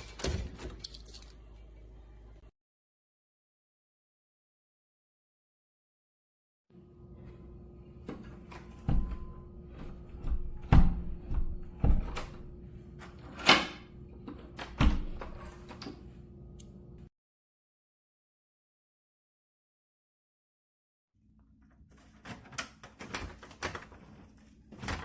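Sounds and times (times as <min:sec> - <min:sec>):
door knocking and rattling: 0:10.1 - 0:12.4.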